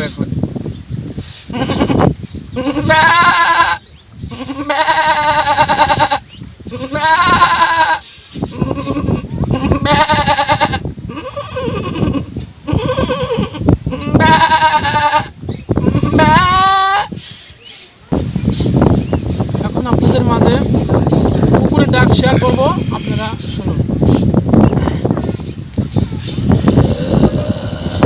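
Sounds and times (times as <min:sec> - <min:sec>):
man imitating goat bleats: 0:01.5 - 0:17.1, 0:26.6 - 0:28.0.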